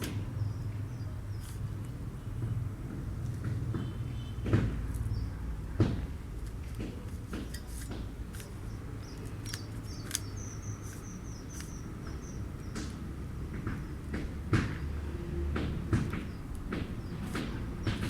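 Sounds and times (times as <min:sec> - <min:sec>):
puzzle cube clicking as layers turn: 0:09.2 - 0:11.8.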